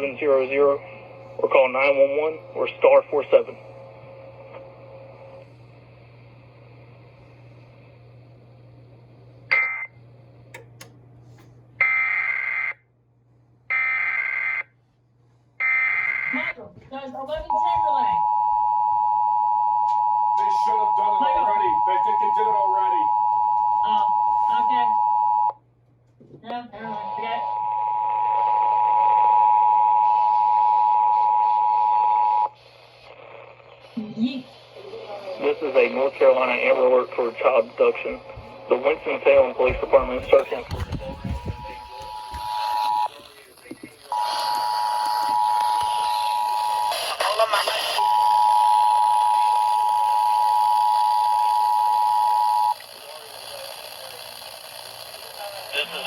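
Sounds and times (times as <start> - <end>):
faint radio hum and hiss: 0.0 - 11.7, 20.3 - 25.6, 26.2 - 56.0
clicks: 10.5 - 11.5.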